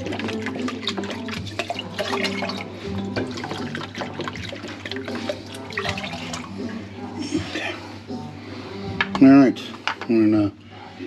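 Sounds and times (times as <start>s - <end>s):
vinegar pouring and splashing: 0.0s - 6.7s
background music: 0.0s - 11.0s.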